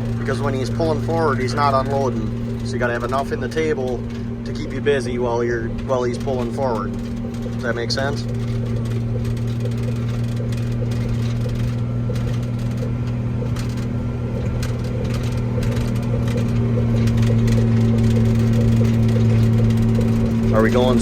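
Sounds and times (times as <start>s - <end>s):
tractor engine running: 0.0s - 21.0s
faint clicks: 5.7s - 21.0s.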